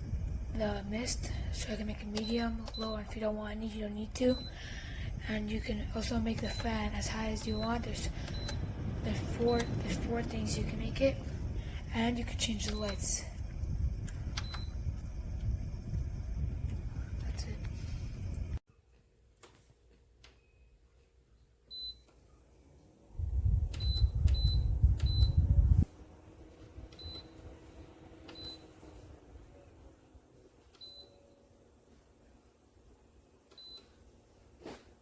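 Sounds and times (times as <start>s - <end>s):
loud low rumble: 4.8s - 12.6s
high button beeps: 7.4s - 8.7s.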